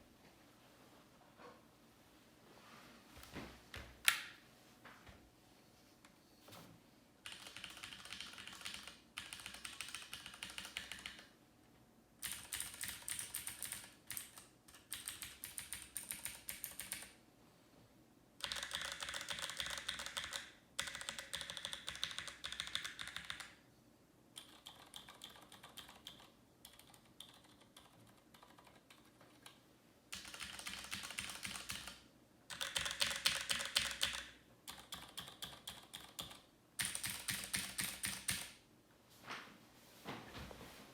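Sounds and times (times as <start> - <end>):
fast keyboard typing: 7.2 - 11.3, 12.2 - 17.2, 18.4 - 23.6, 24.4 - 38.6.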